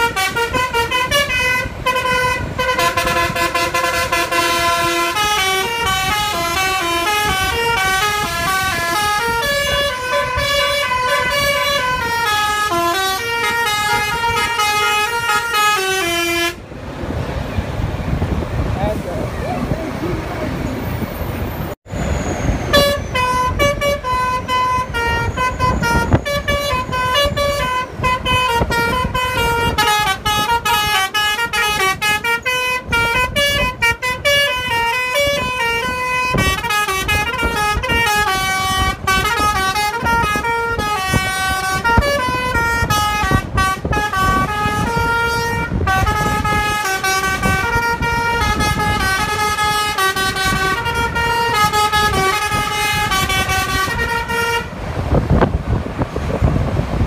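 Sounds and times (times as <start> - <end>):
musical air horns playing tune: 0.0 - 16.6, 22.6 - 54.8.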